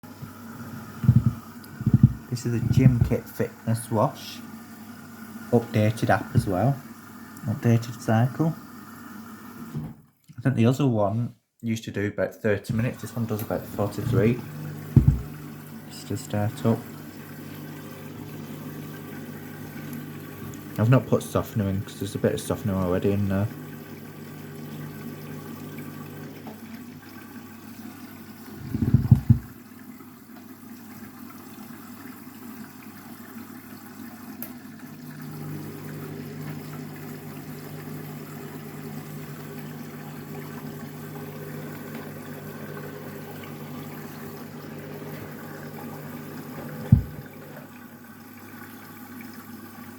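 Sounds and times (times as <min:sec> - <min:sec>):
water flowing into washing machine: 0:00.0 - 0:10.4, 0:12.6 - 0:49.9
short low thud: 0:01.0 - 0:03.1, 0:14.9 - 0:15.4, 0:28.6 - 0:29.5, 0:46.9 - 0:47.3.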